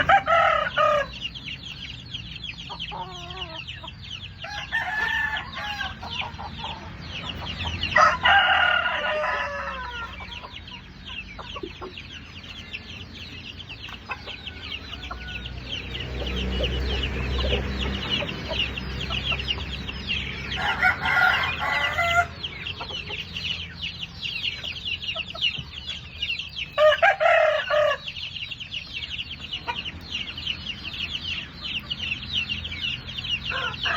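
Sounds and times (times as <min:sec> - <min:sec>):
rooster crowing: 0:00.0 - 0:01.3, 0:04.4 - 0:06.3, 0:07.9 - 0:10.3, 0:14.2 - 0:16.0, 0:20.4 - 0:22.5, 0:26.8 - 0:28.2, 0:33.4 - 0:33.9
chickens clucking: 0:00.0 - 0:33.9.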